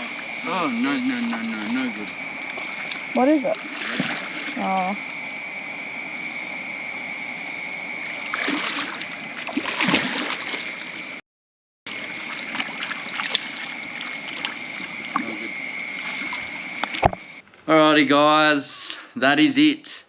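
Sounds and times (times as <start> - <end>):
steady high-pitched tone: 0.0 - 2.1
water splashing and sloshing: 0.0 - 6.6, 7.6 - 11.2, 11.9 - 17.4.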